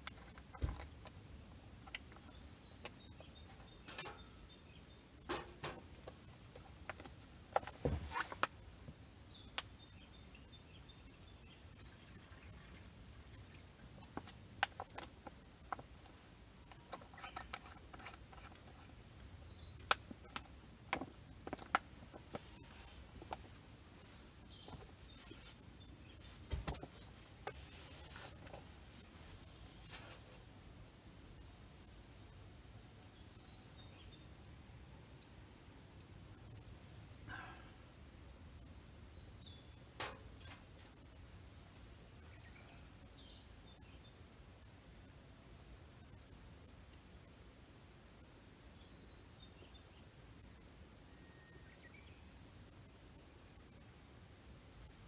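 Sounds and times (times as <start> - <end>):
insects chirring: 0.0 - 55.0
light clicks and knocks: 1.8 - 4.4, 5.2 - 8.6, 40.0 - 41.0.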